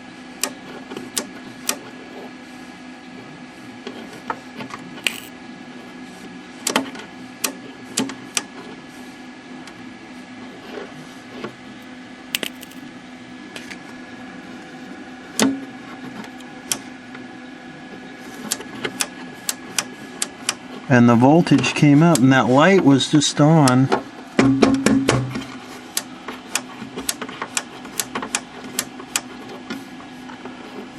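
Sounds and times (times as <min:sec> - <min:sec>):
sharp clicks and taps: 0:05.1 - 0:05.3, 0:12.4 - 0:12.8.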